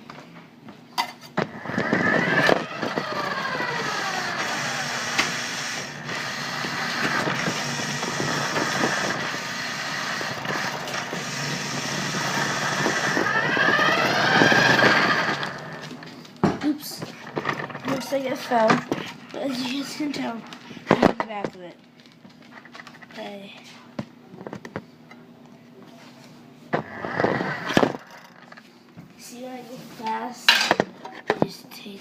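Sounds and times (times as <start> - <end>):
toy truck motor whining: 1.5 - 16.0, 26.8 - 28.5.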